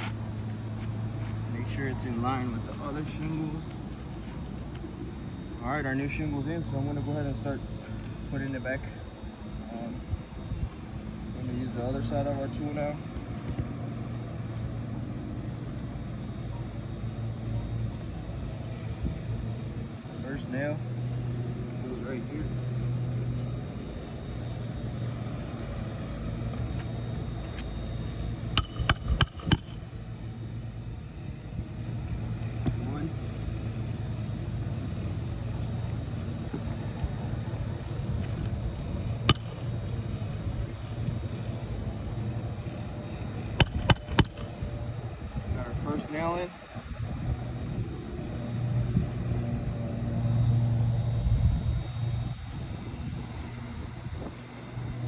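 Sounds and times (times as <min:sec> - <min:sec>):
low hum: 0:20.8 - 0:32.4, 0:33.1 - 0:45.5
hammer striking metal nail: 0:28.6 - 0:29.9, 0:39.3 - 0:39.9, 0:43.6 - 0:44.6.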